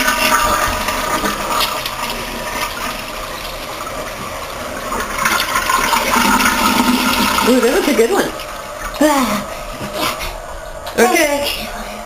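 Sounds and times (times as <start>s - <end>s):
toilet flushing: 0.0s - 12.0s.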